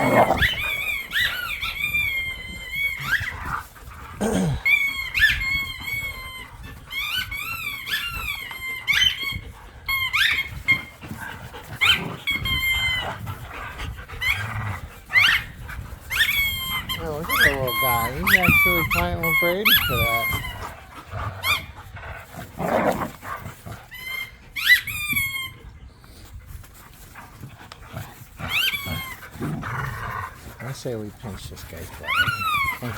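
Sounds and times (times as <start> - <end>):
low dog growling: 0.0 - 0.9, 4.0 - 4.9, 16.9 - 23.8
squeaky toy squeaking: 16.1 - 20.6, 24.0 - 25.6.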